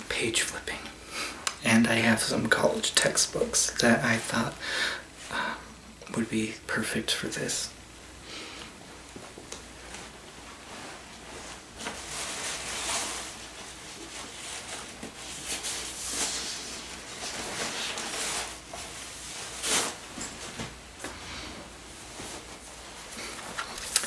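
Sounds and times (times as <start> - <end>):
book pages flipping: 23.2 - 24.0.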